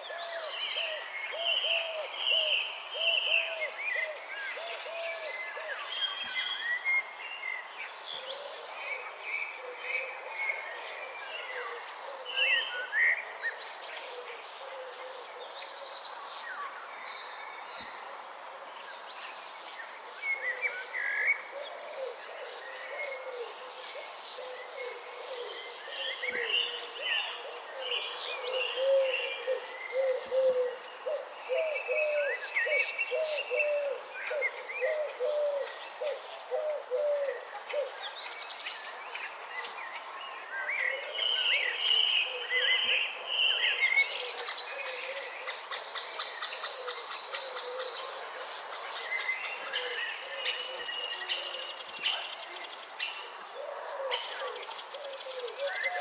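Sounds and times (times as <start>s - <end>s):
high insect drone: 0.0s - 56.0s.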